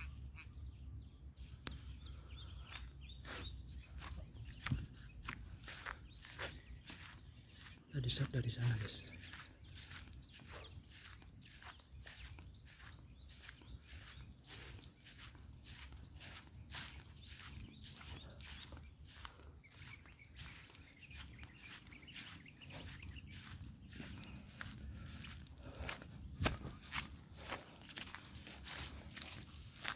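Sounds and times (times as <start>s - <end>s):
high-pitched insect drone: 0.0s - 29.9s
footsteps through undergrowth: 2.6s - 29.9s.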